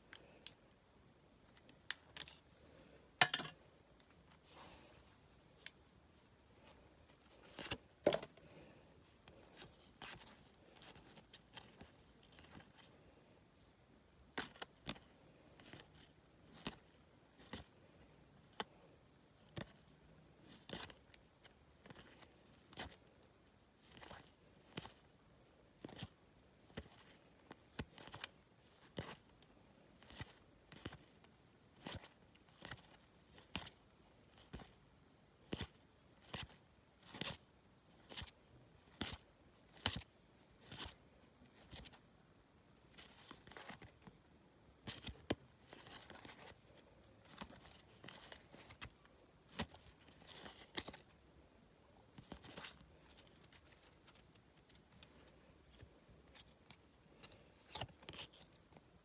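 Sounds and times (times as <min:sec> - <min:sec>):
cards rustling: 0:07.2 - 0:08.4, 0:43.0 - 0:44.0, 0:44.9 - 0:51.2, 0:52.2 - 0:58.9.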